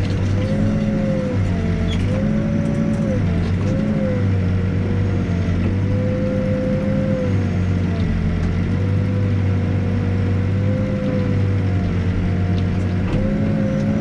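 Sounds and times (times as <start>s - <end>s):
backhoe diesel engine running: 0.0s - 14.0s.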